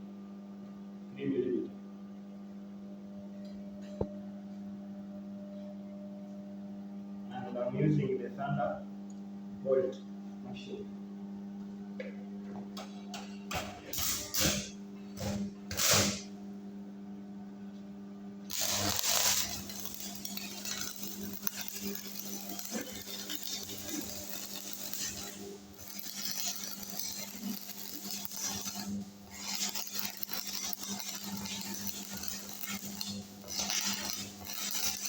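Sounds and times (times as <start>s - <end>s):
steady hum: 0.0s - 35.0s
welding arc scratches: 13.5s - 16.3s, 18.5s - 35.0s
welding arc hissing: 13.5s - 16.4s, 18.5s - 35.0s.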